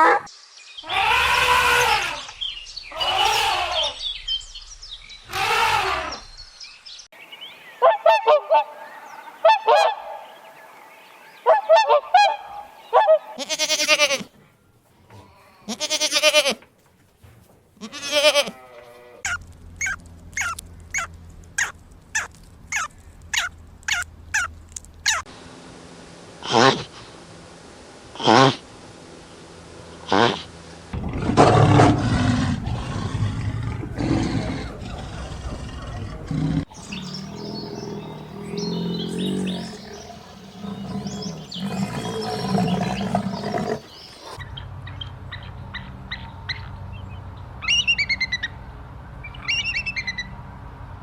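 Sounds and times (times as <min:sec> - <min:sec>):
short high animal calls: 0:00.8 - 0:04.0, 0:05.3 - 0:06.3
farm animal calls: 0:00.8 - 0:04.3, 0:05.3 - 0:06.4, 0:11.4 - 0:14.4, 0:31.0 - 0:44.4.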